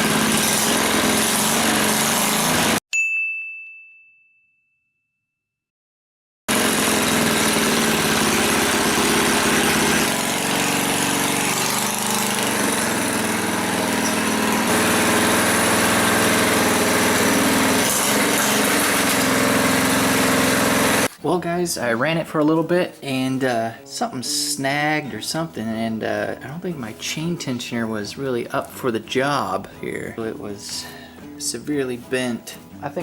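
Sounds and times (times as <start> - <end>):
small engine running: 0.0 - 2.8, 6.5 - 21.1.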